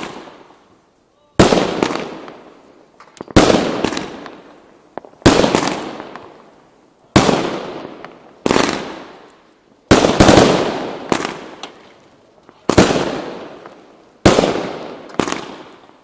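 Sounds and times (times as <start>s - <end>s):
small firework pops: 0.0s - 0.7s, 1.4s - 6.5s, 7.1s - 16.0s
fireworks bangs with echo: 0.0s - 0.8s, 1.4s - 16.0s.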